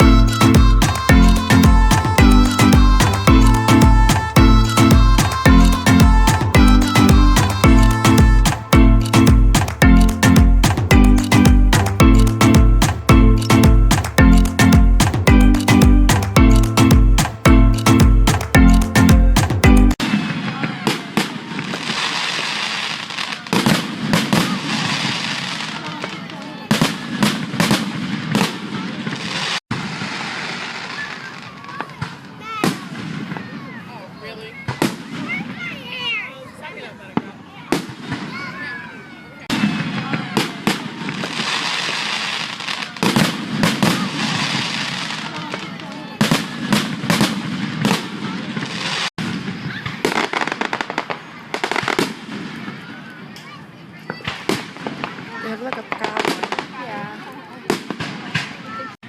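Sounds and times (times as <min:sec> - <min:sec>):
crackling firework pops: 0:20.0 - 0:33.6, 0:34.7 - 0:35.4, 0:39.5 - 0:52.8, 0:53.4 - 0:56.8
fireworks bangs: 0:20.0 - 0:33.8, 0:39.5 - 0:53.1, 0:54.0 - 0:56.8.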